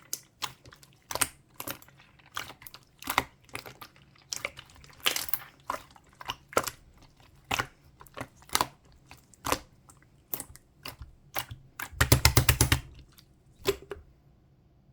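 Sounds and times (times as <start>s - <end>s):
slime clicking pops: 10.4s - 13.0s.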